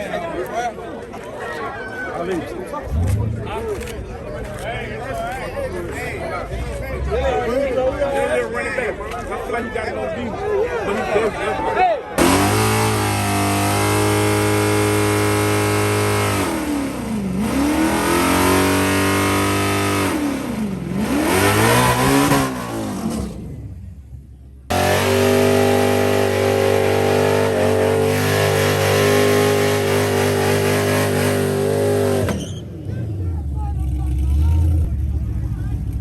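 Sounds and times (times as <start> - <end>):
race car engine revving: 2.8 - 4.0, 12.2 - 23.8, 24.7 - 33.2.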